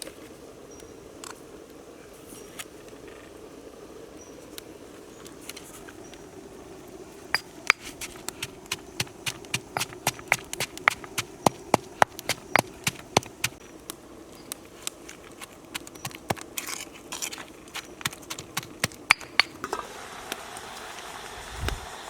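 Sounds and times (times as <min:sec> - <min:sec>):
low background hum: 0:00.5 - 0:22.0
knife chopping knocks: 0:07.4 - 0:13.6.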